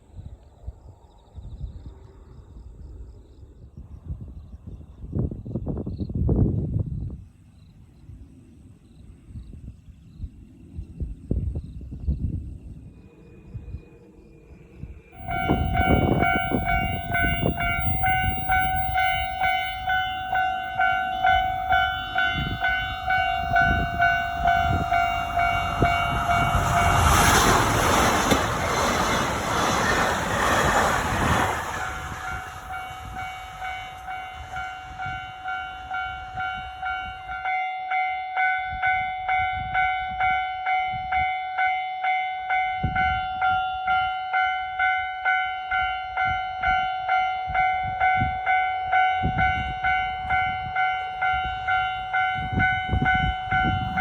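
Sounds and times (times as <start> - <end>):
train rumble and wheel clatter: 0.0 - 54.0
level crossing warning bell: 15.1 - 30.0, 32.0 - 54.0.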